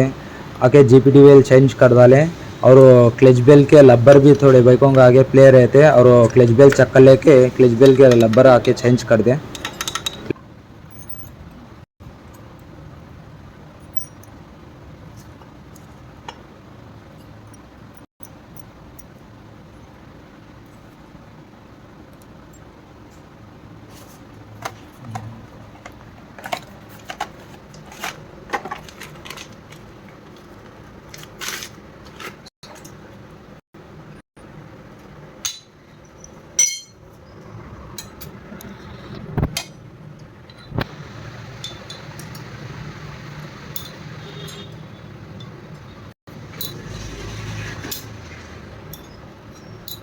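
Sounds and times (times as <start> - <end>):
metal parts and tools clinking: 9.5 - 11.4, 35.4 - 37.0, 46.5 - 47.0, 48.9 - 50.0
ringing metallic clink: 35.4 - 37.0.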